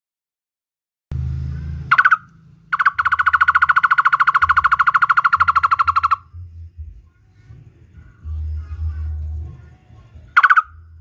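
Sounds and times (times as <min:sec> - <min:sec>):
fast bird trill: 0:01.9 - 0:06.3, 0:10.4 - 0:11.0
barbet calling: 0:01.9 - 0:06.4, 0:10.4 - 0:10.8.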